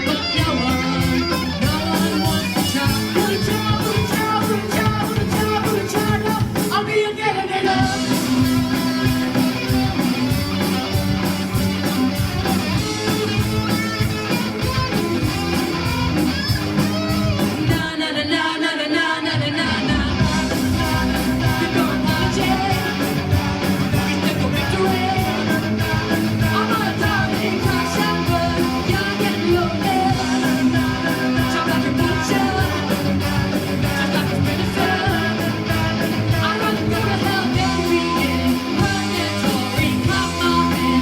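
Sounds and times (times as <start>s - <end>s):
person singing: 0.0s - 10.0s, 17.7s - 41.0s
rock music with electric guitar: 0.0s - 41.0s.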